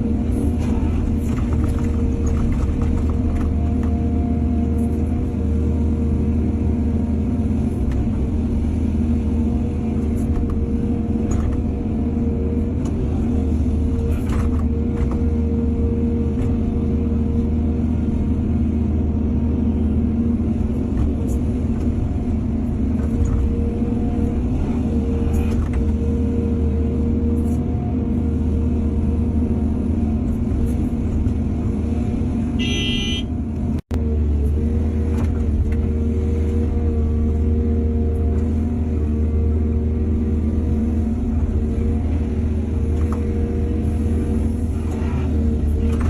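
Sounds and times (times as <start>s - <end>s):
excavator diesel engine running: 0.0s - 46.0s.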